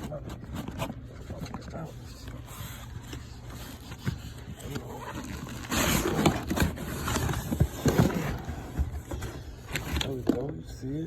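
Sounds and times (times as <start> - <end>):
cardboard packaging rustling: 0.0 - 10.6.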